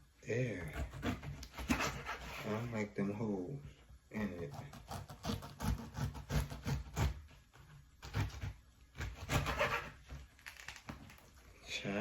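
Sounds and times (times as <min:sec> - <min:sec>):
knife cutting through pineapple rind: 0:00.5 - 0:02.9, 0:04.2 - 0:11.2.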